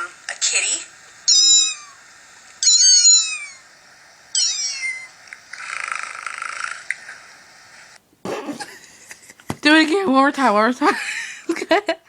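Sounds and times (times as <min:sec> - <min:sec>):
buzzy purr-like sound: 0:04.3 - 0:07.2.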